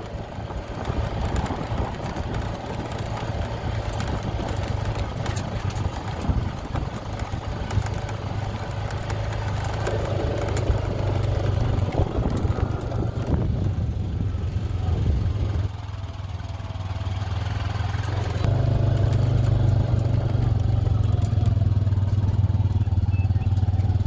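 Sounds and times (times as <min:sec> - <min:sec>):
utility vehicle engine running: 0:00.0 - 0:24.0
vehicle clicks and rattles: 0:00.0 - 0:24.0.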